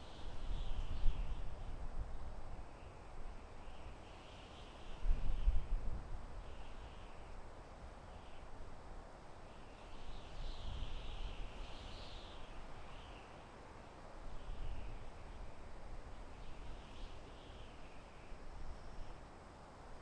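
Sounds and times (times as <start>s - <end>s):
wind through forest: 0.0s - 20.0s
small birds chirping: 9.5s - 13.6s, 14.3s - 19.2s.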